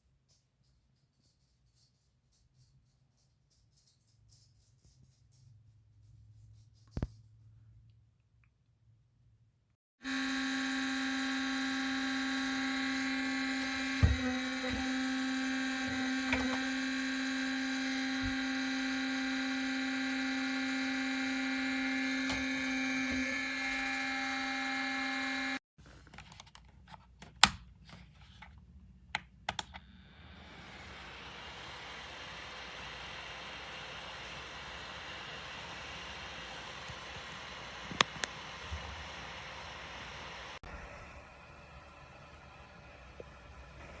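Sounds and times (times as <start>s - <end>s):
heater fan motor whining: 10.0s - 25.6s, 29.5s - 44.0s
steady hiss: 29.9s - 44.0s.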